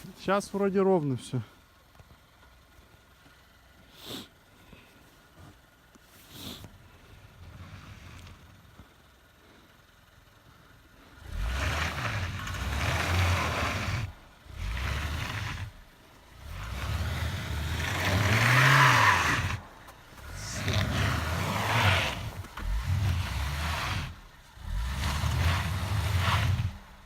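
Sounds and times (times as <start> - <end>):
wheels spinning in snow: 1.9 - 27.0
car engine revving hard: 11.2 - 27.0.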